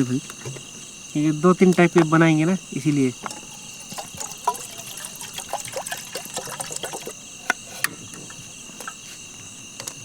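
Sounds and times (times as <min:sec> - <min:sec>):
crickets chirping: 0:00.0 - 0:10.0
water gurgling: 0:02.7 - 0:07.2.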